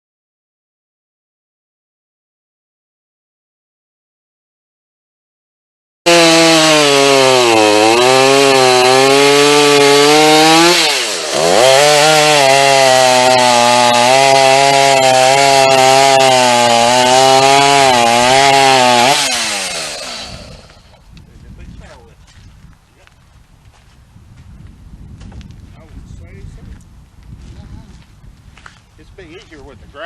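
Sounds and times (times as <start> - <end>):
chainsaw cutting wood: 6.1 - 21.0.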